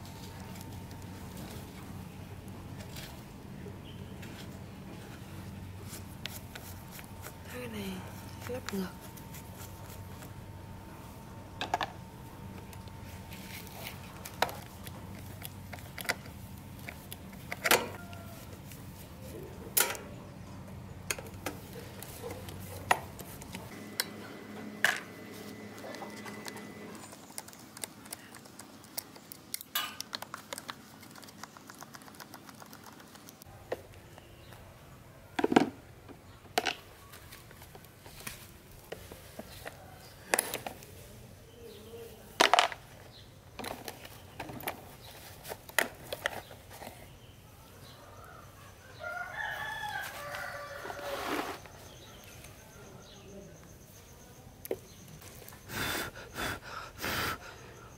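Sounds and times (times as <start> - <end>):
metal fan parts clinking: 19.7 - 20.2, 29.5 - 30.2.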